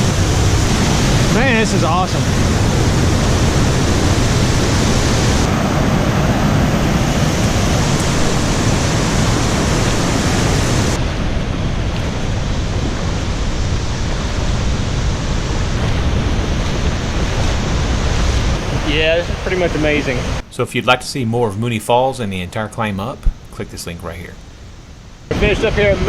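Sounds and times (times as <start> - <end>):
waterfall rushing and crashing: 0.0 - 20.4.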